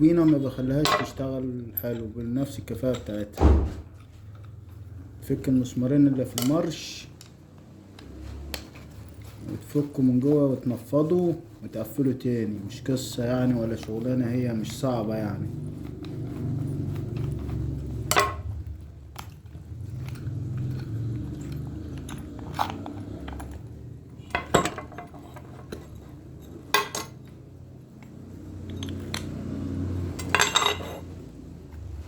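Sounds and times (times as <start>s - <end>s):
metal parts knocking and clinking: 0.1s - 3.4s, 18.1s - 31.2s.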